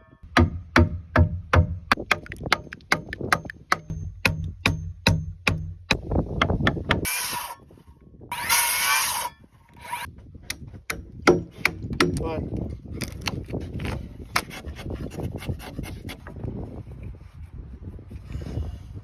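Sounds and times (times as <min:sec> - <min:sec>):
tool striking timber: 0:00.0 - 0:07.6, 0:08.3 - 0:12.2.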